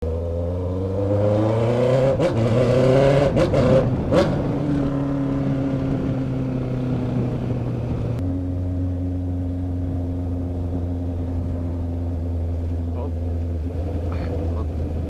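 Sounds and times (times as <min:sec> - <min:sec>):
motorcycle engine revving: 0:00.0 - 0:15.0
exhaust cracks: 0:09.0 - 0:15.0.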